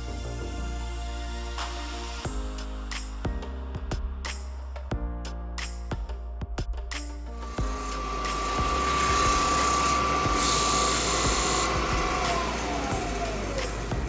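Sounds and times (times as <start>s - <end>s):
tool cutting wood hiss: 7.4s - 14.0s
wood lathe whining: 7.4s - 14.0s.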